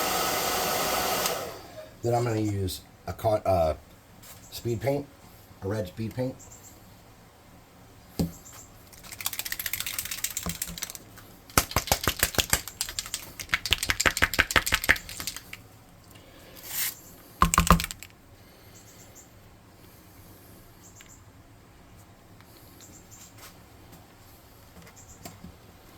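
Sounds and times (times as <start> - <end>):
mixing ball rattling in bottle: 8.9 - 15.6, 17.4 - 18.1.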